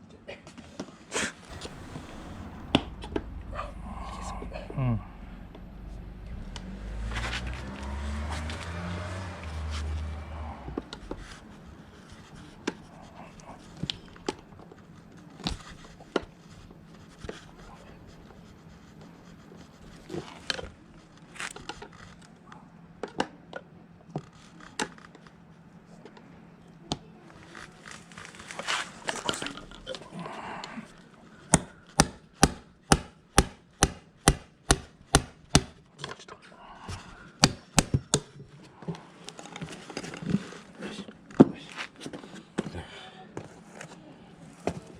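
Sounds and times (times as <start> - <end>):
sharp hammer taps: 31.6 - 35.7.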